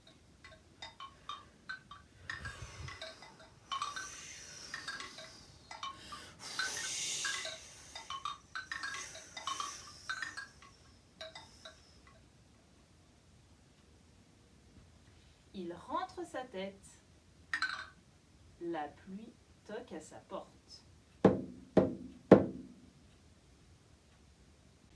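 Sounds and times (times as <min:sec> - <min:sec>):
shaken jingling rush: 0:02.2 - 0:11.8.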